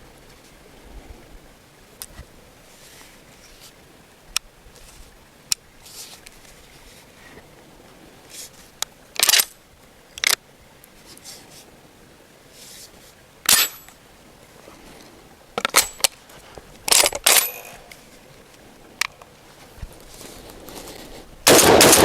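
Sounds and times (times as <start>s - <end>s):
shotgun metallic clacks: 9.2s - 9.5s, 15.6s - 16.1s, 16.9s - 17.8s, 21.5s - 22.0s.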